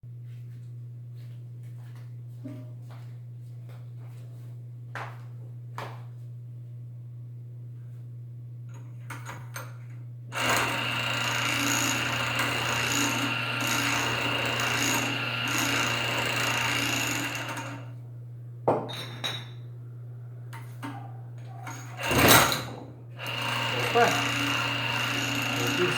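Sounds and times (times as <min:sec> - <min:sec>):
machine scraping with high whine: 0:23.2 - 0:25.9.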